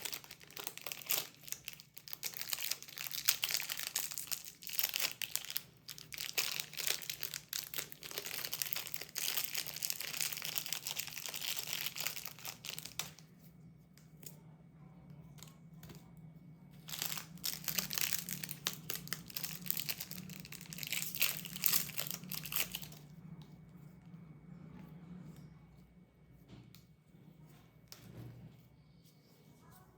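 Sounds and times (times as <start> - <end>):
candy wrapper crinkling and tearing: 0.0 - 13.3, 16.8 - 23.1
faint low hum: 0.0 - 29.9.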